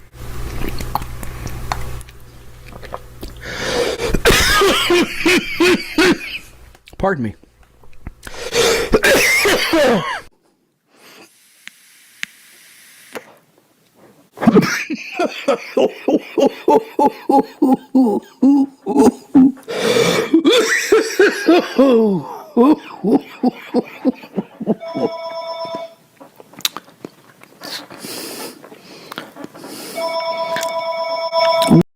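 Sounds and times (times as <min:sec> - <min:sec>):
hoarse gasps: 0:03.4 - 0:04.2, 0:08.2 - 0:09.0, 0:19.7 - 0:20.4
man coughing: 0:04.0 - 0:06.4, 0:08.8 - 0:10.3, 0:14.4 - 0:19.5, 0:20.2 - 0:25.1
electronic ringing tone: 0:24.8 - 0:26.0, 0:30.0 - 0:31.8.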